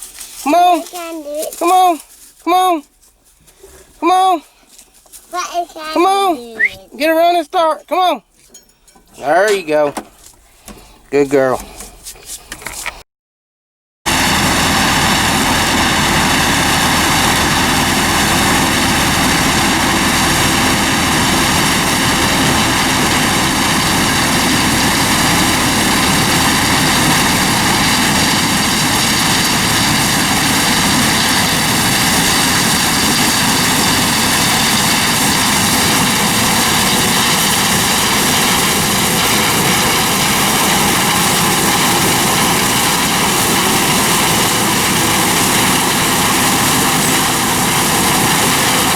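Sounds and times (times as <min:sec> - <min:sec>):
farm machinery engine drone: 0:14.1 - 0:48.9.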